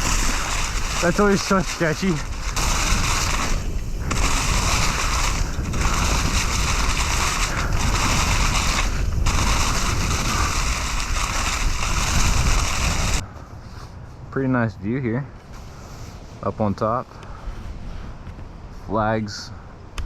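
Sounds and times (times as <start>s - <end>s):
wind on microphone: 0.0s - 13.2s
bike tires rolling on dirt: 0.0s - 14.4s.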